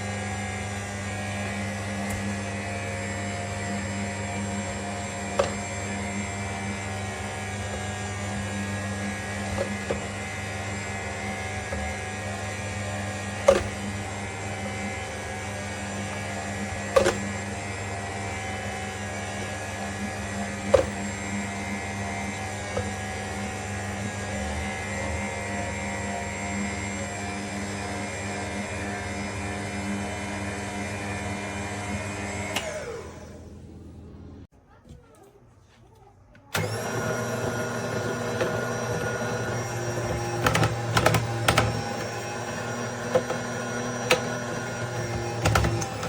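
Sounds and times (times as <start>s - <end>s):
juicer motor humming: 0.0s - 34.4s, 36.5s - 46.0s.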